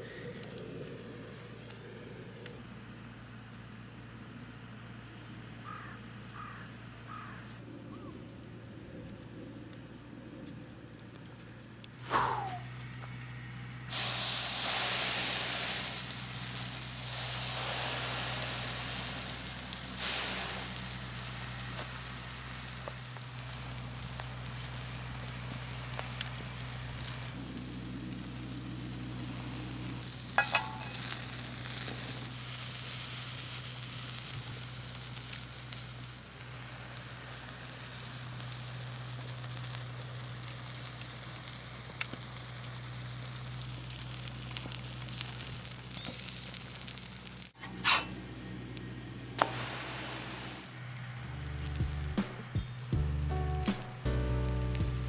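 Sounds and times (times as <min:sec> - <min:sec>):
food sizzling in a pan: 0:13.9 - 0:41.7, 0:49.4 - 0:52.4.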